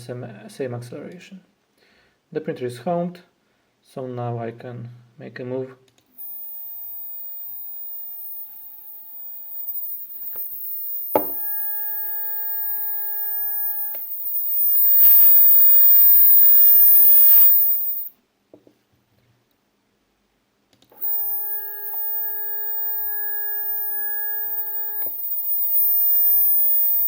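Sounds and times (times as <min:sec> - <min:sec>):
stepper motor moving rushing: 0:06.2 - 0:18.1, 0:21.0 - 0:27.0
stepper motor whine: 0:06.2 - 0:18.1, 0:21.0 - 0:27.0.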